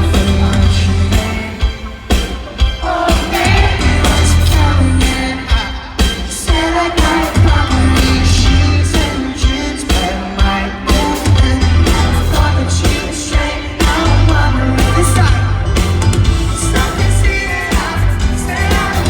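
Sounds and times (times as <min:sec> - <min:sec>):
heavy pulsing bass: 0:00.0 - 0:01.6, 0:03.5 - 0:05.4, 0:07.4 - 0:09.0, 0:11.3 - 0:13.0, 0:13.9 - 0:19.0
live pop-rock band: 0:00.0 - 0:19.0
person singing: 0:00.0 - 0:19.0
steady drum beat: 0:00.0 - 0:19.0.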